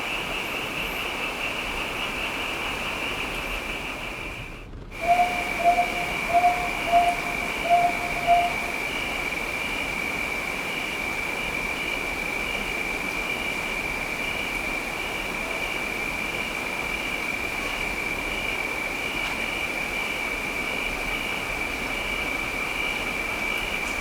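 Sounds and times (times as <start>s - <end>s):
high-pitched whine: 0.0s - 12.7s
rain hiss: 0.0s - 24.0s
short low calls: 5.0s - 9.2s.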